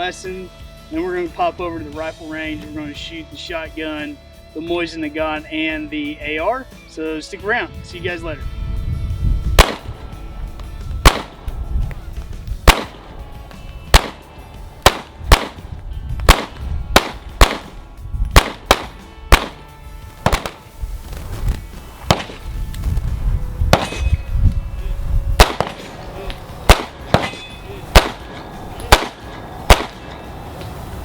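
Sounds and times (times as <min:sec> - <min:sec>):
pistol shots: 0:09.6 - 0:10.2, 0:11.0 - 0:11.6, 0:12.6 - 0:17.8, 0:18.4 - 0:20.7, 0:22.1 - 0:22.5, 0:23.7 - 0:24.2, 0:25.4 - 0:30.4.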